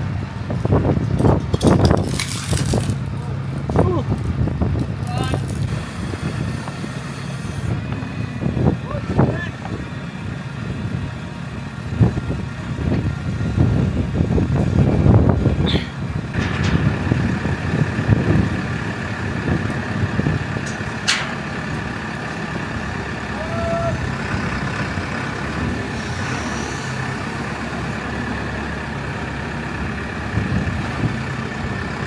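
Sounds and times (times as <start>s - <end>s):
diesel engine running: 0.0s - 32.0s
thin steady whine: 5.7s - 9.5s.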